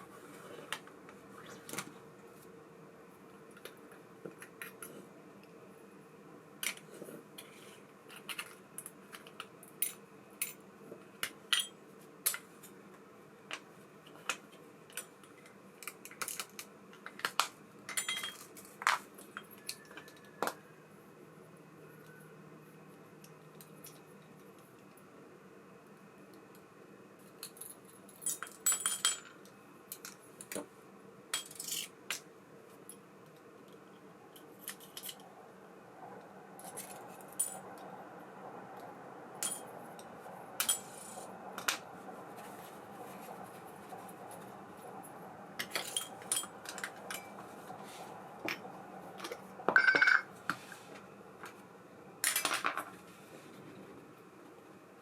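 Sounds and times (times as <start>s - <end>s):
small metal parts clinking: 31.4s - 31.9s.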